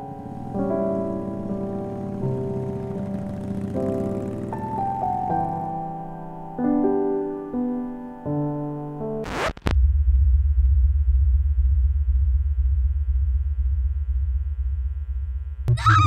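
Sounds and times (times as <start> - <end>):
electric piano chords: 0.0 - 9.4.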